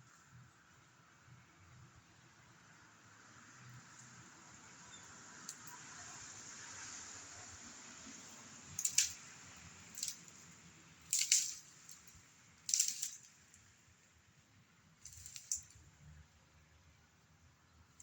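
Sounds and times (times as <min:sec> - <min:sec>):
crunching scraping noises: 0:08.7 - 0:13.8, 0:15.0 - 0:15.9.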